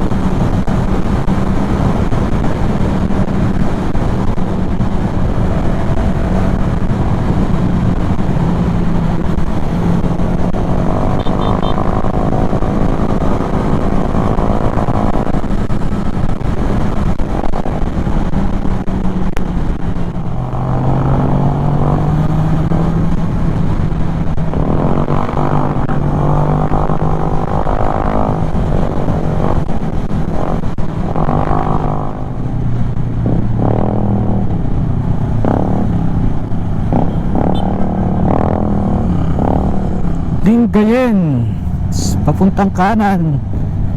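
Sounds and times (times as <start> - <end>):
wind on microphone: 0.0 - 40.4
scooter engine running: 36.6 - 40.5.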